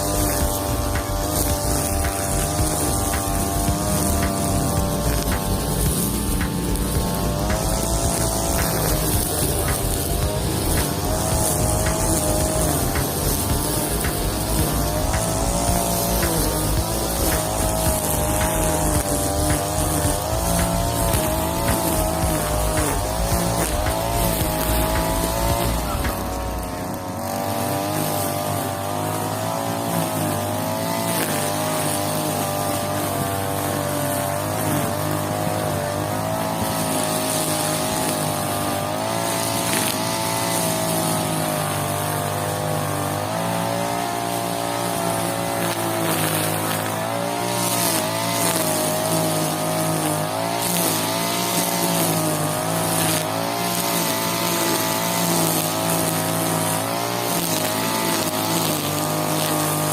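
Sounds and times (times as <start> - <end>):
brush cutter cutting grass: 0.0 - 59.9.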